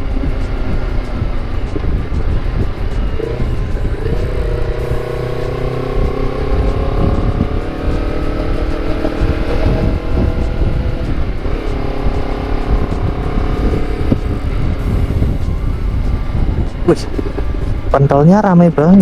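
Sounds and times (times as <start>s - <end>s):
motorcycle engine running: 0.0s - 19.0s
low rumble: 9.2s - 19.0s.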